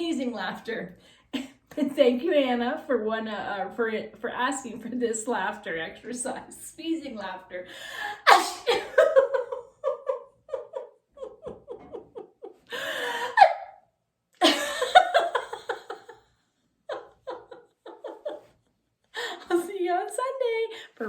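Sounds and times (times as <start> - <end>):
loud mock sneezes: 8.2 - 8.9
person laughing: 8.3 - 13.7, 14.4 - 16.2, 16.9 - 18.5.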